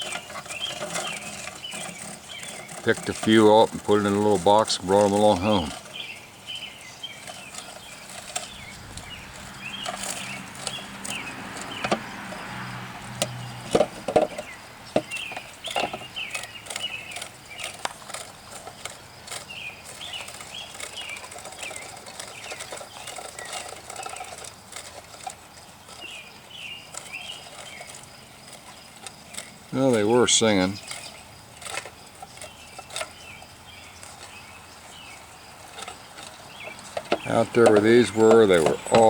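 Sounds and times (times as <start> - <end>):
birds chirping: 0.0 - 39.0
sharp clicks and knocks: 7.2 - 19.5, 35.7 - 39.0.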